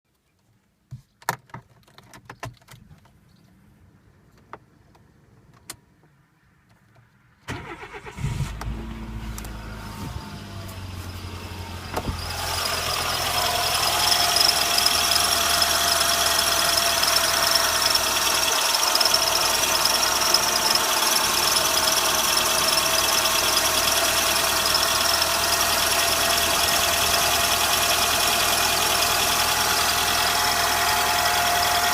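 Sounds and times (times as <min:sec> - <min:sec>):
car engine cranking and idling: 0:07.5 - 0:31.9
belt squealing: 0:11.8 - 0:15.5.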